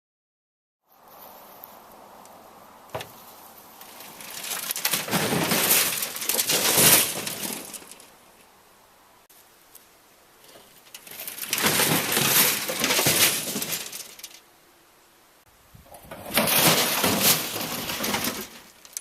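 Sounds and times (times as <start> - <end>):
metal toolbox clattering: 3.8 - 8.1, 10.5 - 14.4, 16.0 - 19.0.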